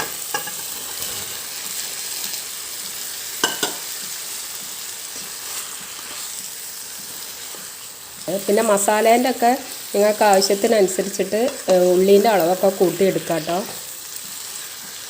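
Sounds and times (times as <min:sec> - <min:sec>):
spoon clinking on pan: 0:00.0 - 0:00.7, 0:03.4 - 0:03.9
masala sizzling in a pan: 0:00.0 - 0:15.0
spoon stirring food: 0:03.4 - 0:08.3.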